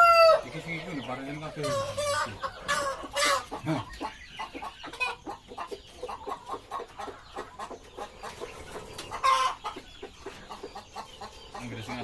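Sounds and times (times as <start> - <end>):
chickens clucking: 0.0 - 12.0.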